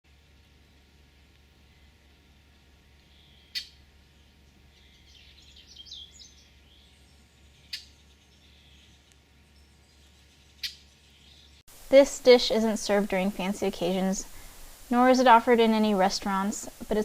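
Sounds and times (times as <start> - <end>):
low steady hum: 0.1 - 17.0
bird twittering: 1.7 - 11.6
bird chips: 1.8 - 3.8.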